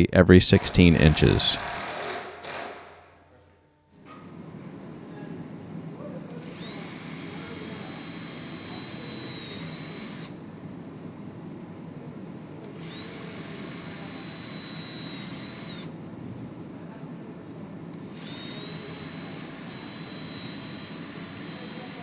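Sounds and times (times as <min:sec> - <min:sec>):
power drill driving screws: 0:01.6 - 0:02.9, 0:06.5 - 0:10.3, 0:12.8 - 0:15.9, 0:18.2 - 0:22.0.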